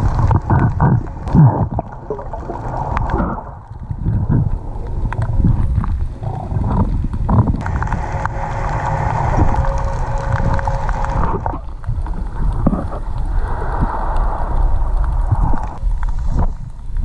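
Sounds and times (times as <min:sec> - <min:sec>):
underwater rumble: 0:00.0 - 0:17.0
steady mid-pitched tone: 0:07.6 - 0:12.5.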